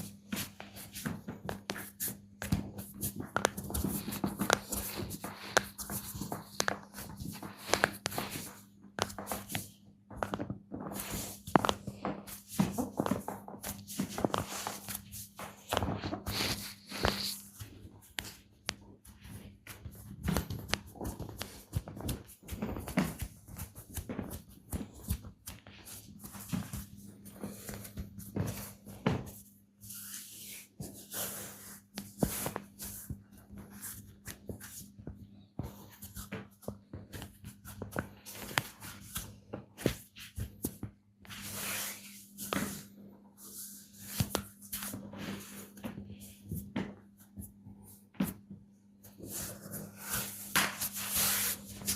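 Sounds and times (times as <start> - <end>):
hands rubbing skin: 12.3 - 35.0, 49.2 - 51.9.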